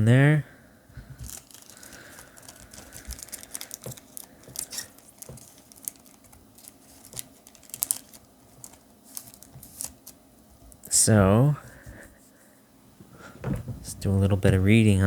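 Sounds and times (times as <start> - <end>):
foil wrappers crinkling: 1.2 - 10.8.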